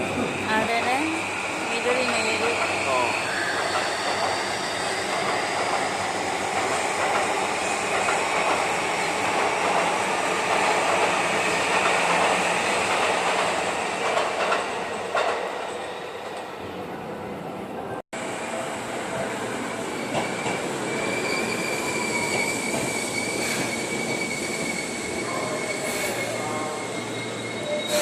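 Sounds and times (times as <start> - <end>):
train wheels rumbling on rails: 0.0 - 16.8, 18.2 - 28.0
faint high squeal: 2.1 - 6.0, 19.9 - 28.0.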